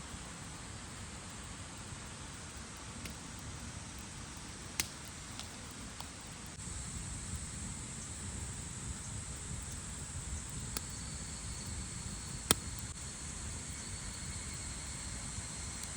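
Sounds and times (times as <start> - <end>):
campfire crackling: 0.1 - 15.9
fire popping: 0.2 - 15.9
high insect drone: 3.4 - 15.9.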